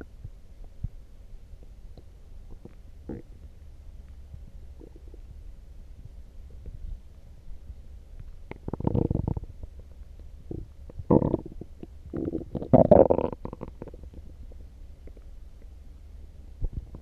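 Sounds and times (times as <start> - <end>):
stomach growling and gurgling: 2.5 - 3.4, 8.5 - 9.8, 10.4 - 15.3.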